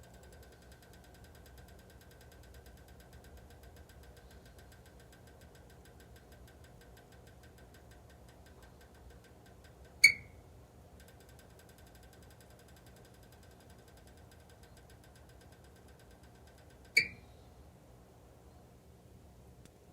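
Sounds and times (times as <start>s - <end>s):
fast faint ticking: 0.0s - 17.1s
electric heater hum: 0.0s - 19.9s
sharp ringing click: 10.0s - 10.4s.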